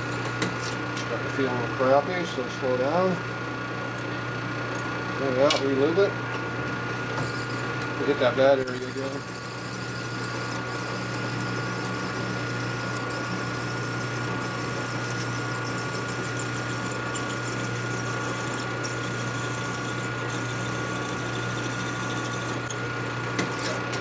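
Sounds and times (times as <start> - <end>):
lathe motor hum: 5.2 - 23.9.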